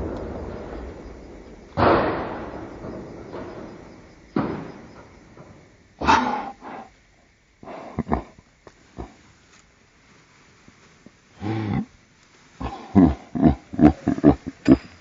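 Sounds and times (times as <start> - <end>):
loud blast: 0.0 - 5.0
bang with rolling echo: 0.0 - 6.0
sharp bang: 0.0 - 6.4.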